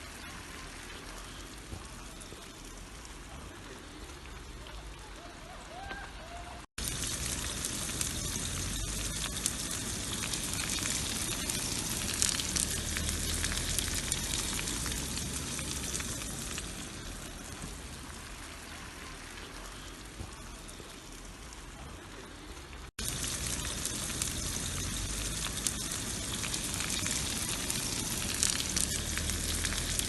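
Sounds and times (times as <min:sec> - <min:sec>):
meat sizzling in a frying pan: 0:06.8 - 0:21.4, 0:23.0 - 0:30.0.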